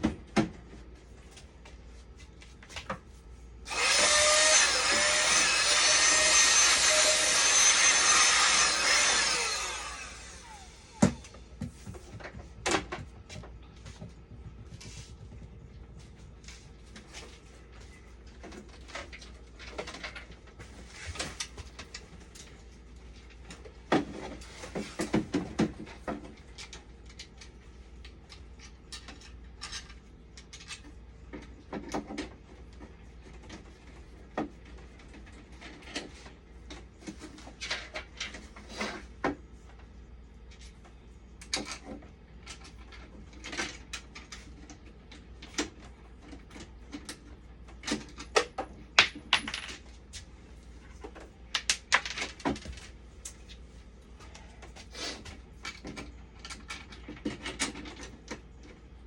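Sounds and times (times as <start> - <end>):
steady low hum: 8.6 - 23.6.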